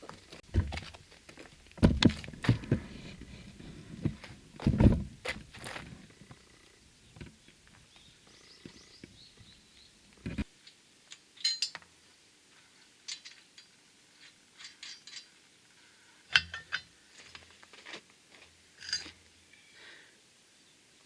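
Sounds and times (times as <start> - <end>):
metallic clinks and knocks: 11.1 - 11.9, 13.1 - 15.4, 16.3 - 17.4, 18.8 - 19.2.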